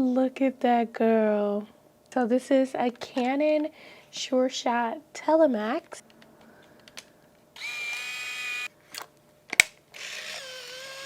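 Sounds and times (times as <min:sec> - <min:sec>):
camera motor whining: 0:07.6 - 0:08.7, 0:10.0 - 0:11.0.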